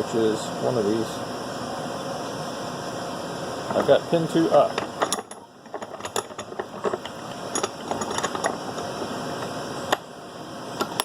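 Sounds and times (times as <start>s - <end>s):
steady transmitter noise: 0.0s - 11.0s
metal clicks and rattles: 4.7s - 10.0s.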